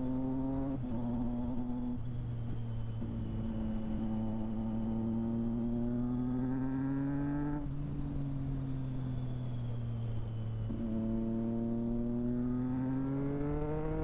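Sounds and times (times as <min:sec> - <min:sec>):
motorcycle engine revving: 0:10.7 - 0:14.0.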